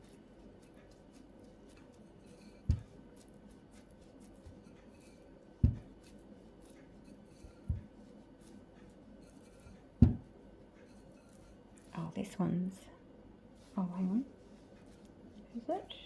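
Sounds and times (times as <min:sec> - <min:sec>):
faint handling sounds: 0:00.0 - 0:16.0
dull thumps on a table: 0:02.7 - 0:02.9, 0:05.6 - 0:05.9, 0:10.0 - 0:10.3.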